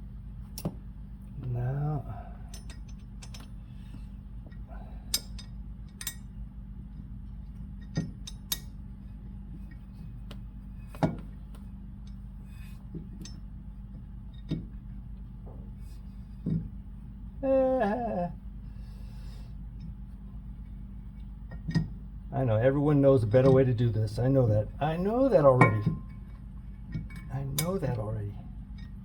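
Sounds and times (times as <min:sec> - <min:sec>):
low hum: 0:00.0 - 0:29.0.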